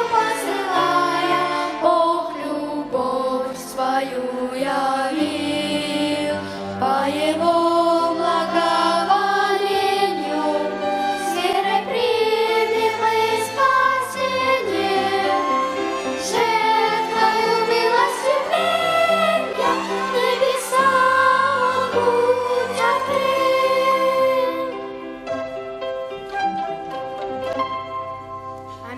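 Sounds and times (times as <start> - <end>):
violin ensemble playing: 0.0 - 2.7, 8.4 - 28.9.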